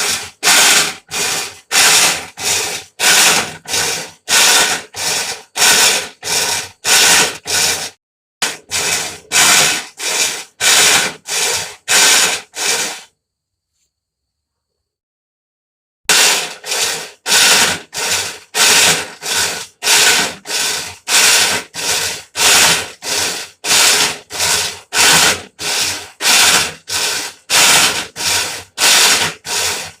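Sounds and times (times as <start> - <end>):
washing machine harsh grinding: 0.0 - 13.1, 16.1 - 30.0.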